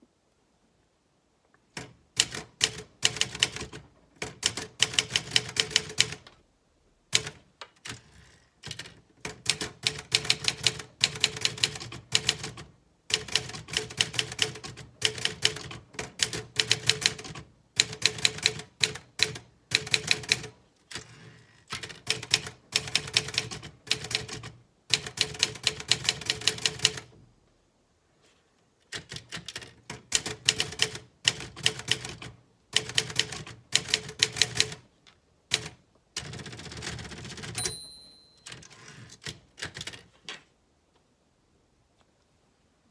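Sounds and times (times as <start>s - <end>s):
typewriter key strikes: 37.4s - 38.8s.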